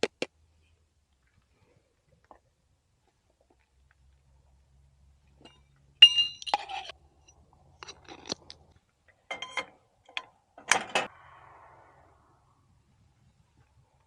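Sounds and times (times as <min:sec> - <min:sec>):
cookware clinking: 0:05.5 - 0:06.9, 0:09.3 - 0:09.7.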